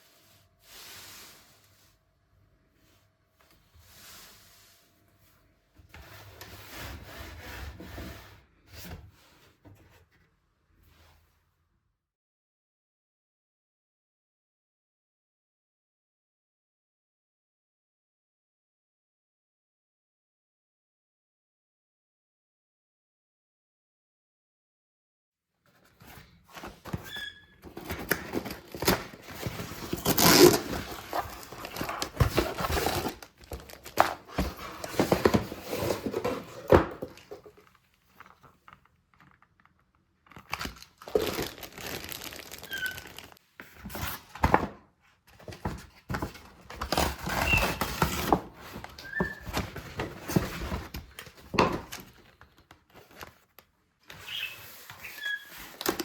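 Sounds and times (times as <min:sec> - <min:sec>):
paper or plastic crinkling: 0:27.7 - 0:38.5, 0:40.2 - 0:44.2.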